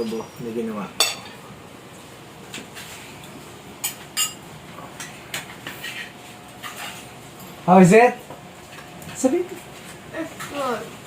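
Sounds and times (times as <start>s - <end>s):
utensils clinking on dishes: 1.0s - 1.4s, 2.6s - 7.7s.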